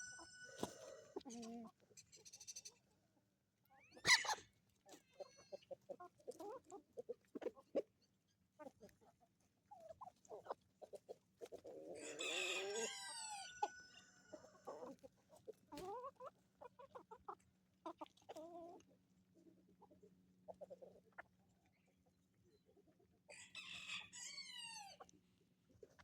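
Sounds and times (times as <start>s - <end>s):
rooster crowing: 0.0s - 1.2s, 12.0s - 14.6s, 23.3s - 25.0s
chickens clucking: 0.0s - 3.0s, 3.8s - 26.0s.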